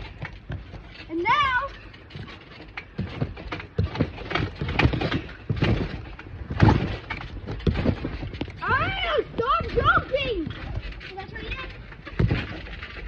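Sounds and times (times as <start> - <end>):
thumps on trampoline mat: 3.0 - 11.0, 12.0 - 13.0.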